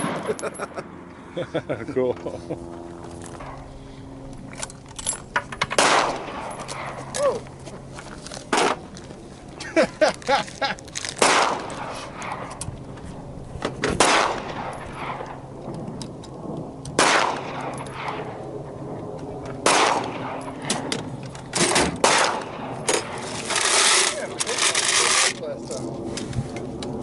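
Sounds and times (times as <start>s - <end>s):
gunshots with long echo: 5.8s - 7.0s, 11.2s - 12.5s, 14.0s - 15.5s, 17.0s - 18.4s, 19.6s - 20.9s, 21.6s - 23.2s.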